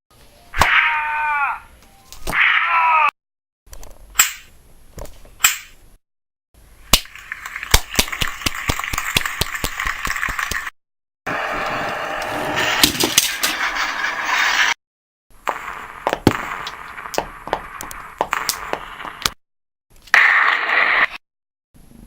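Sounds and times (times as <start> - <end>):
sharp cracks: 6.9 - 10.7, 15.5 - 19.4.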